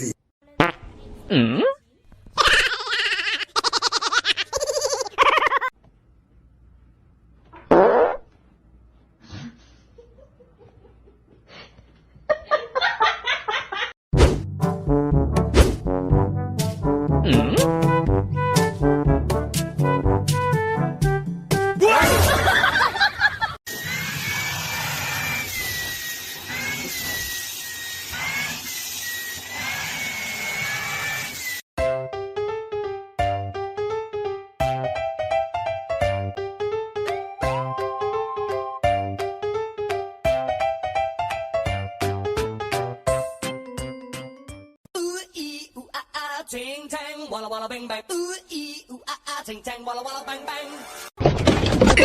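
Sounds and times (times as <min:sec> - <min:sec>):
fart sound: 0:00.6 - 0:01.8, 0:07.6 - 0:08.4.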